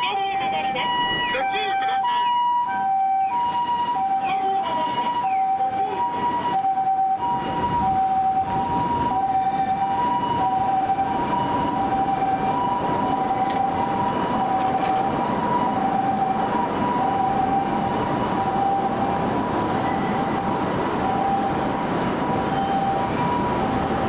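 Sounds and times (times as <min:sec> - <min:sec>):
ambulance two-tone siren: 0:00.0 - 0:24.0
road noise: 0:00.0 - 0:24.0.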